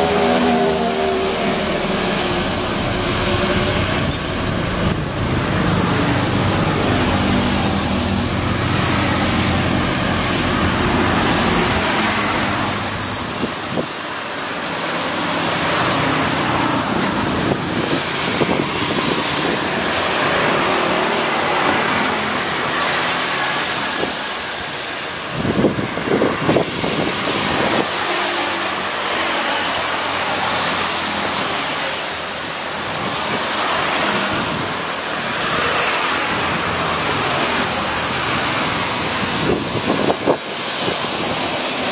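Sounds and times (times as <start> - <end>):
engine low rumble: 0.0 - 12.3
vehicles rushing past: 0.0 - 41.9.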